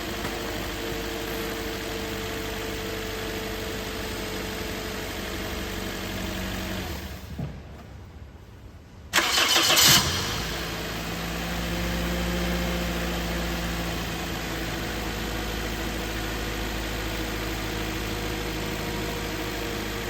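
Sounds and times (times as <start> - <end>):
car engine idling: 0.0 - 7.3, 9.2 - 20.0
engine starting: 9.1 - 10.7.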